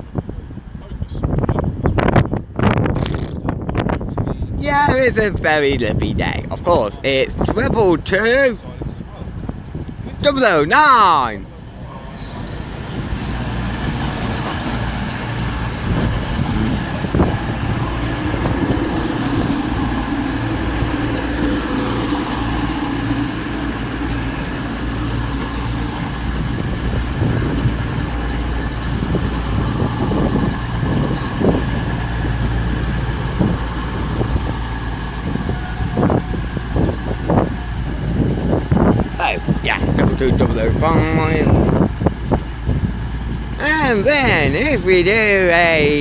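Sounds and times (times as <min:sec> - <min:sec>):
diesel train engines droning: 0:00.0 - 0:46.0.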